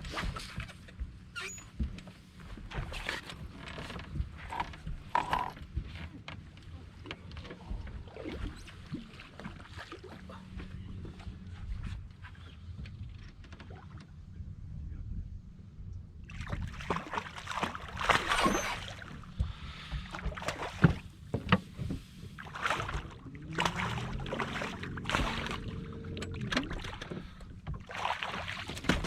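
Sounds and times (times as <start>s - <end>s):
boat motor running: 2.6s - 14.6s, 16.6s - 29.0s
water splashing: 16.3s - 29.0s.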